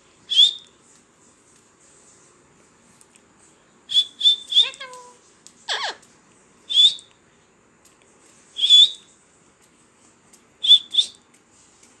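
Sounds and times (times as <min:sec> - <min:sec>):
parrot whistling calls: 0:00.3 - 0:00.7, 0:03.9 - 0:05.1, 0:05.7 - 0:06.0, 0:06.7 - 0:07.1, 0:08.6 - 0:09.1, 0:10.6 - 0:11.2.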